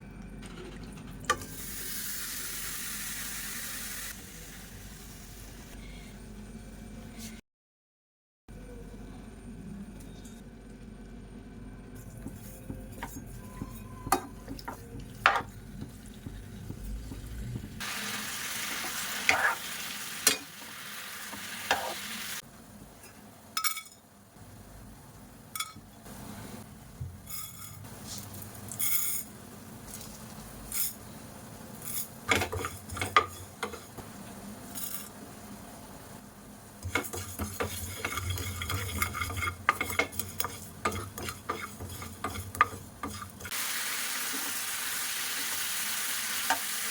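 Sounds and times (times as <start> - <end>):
metal spoon scraping a pan: 19.2 - 20.4, 36.8 - 43.5
chicken frying in hot oil: 36.7 - 46.9.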